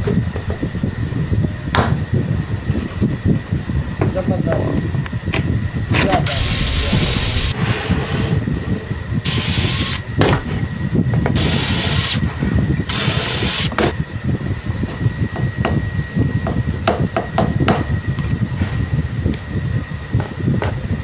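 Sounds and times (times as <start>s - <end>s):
power tool whining: 6.2s - 8.4s, 9.2s - 10.2s, 11.3s - 13.8s.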